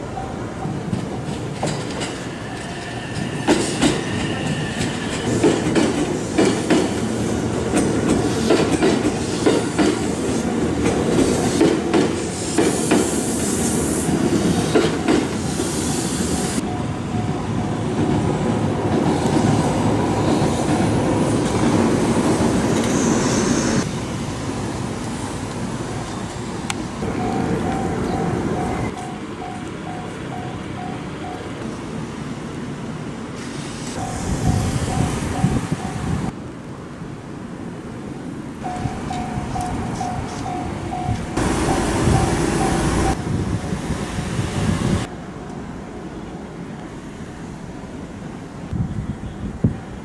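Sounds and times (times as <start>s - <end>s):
train rumble: 0.0s - 36.5s, 38.5s - 50.0s
train wheels clacking over rail joints: 0.9s - 13.2s
high wheel squeal: 2.2s - 5.4s.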